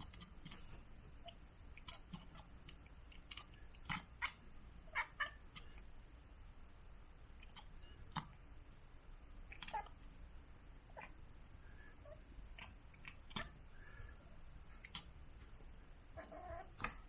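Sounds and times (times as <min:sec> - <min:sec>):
kitten chattering chirps: 0:03.2 - 0:05.7, 0:09.5 - 0:10.0.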